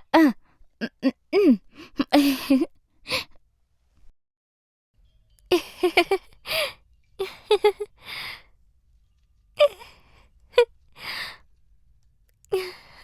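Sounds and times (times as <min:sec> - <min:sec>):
woman laughing: 0:00.8 - 0:02.7, 0:05.5 - 0:08.0.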